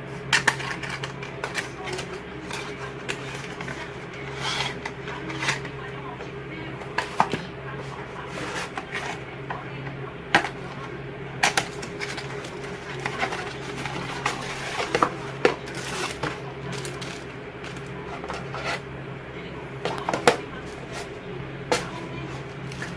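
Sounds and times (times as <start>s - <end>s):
steady low hum: 0.0s - 22.9s.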